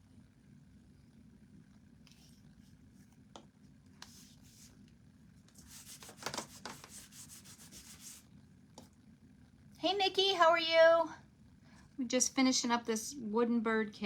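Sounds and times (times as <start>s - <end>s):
scratchy rubbing on wood: 5.6s - 8.2s.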